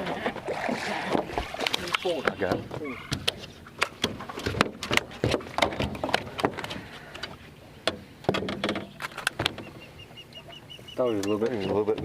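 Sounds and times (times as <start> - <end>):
knocks and clatter in boat: 0.0 - 12.0.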